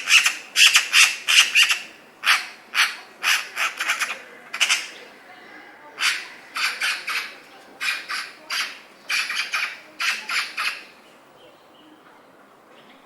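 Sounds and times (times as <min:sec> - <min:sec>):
birds harsh scratchy calls: 0:00.0 - 0:05.2, 0:06.0 - 0:11.0.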